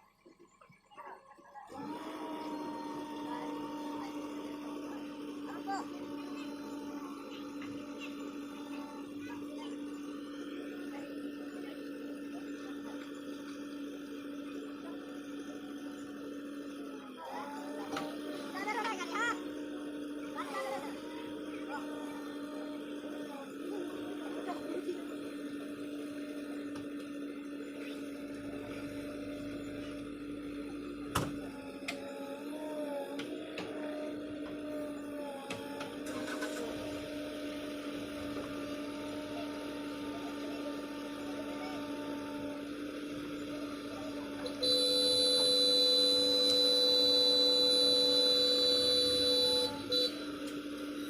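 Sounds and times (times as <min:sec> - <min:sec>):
electronic buzzing tone: 0:36.0 - 0:51.0.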